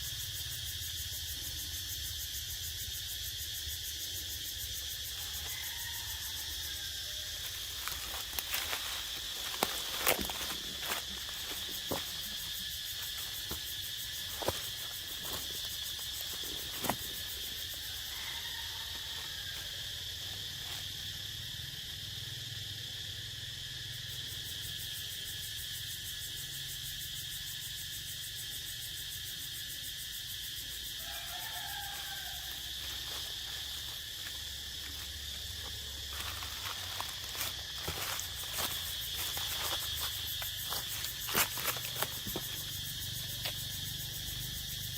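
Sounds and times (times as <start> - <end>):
high-pitched insect chorus: 0.0 - 44.9.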